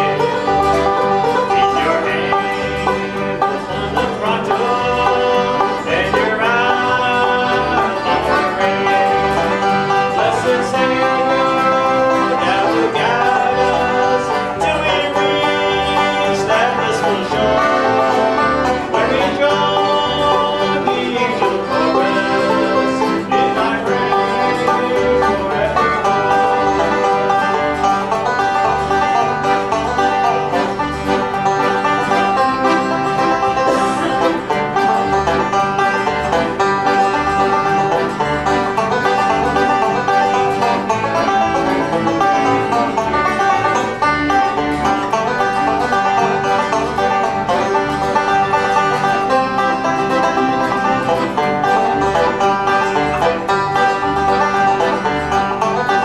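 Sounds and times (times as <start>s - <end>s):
banjo picking: 0.0s - 56.0s
bass keeping a beat: 0.0s - 56.0s
guitar: 0.0s - 56.0s.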